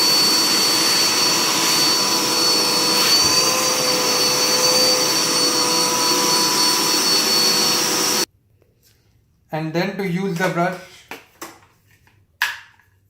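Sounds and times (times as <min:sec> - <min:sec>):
vacuum cleaner running: 0:00.0 - 0:08.3.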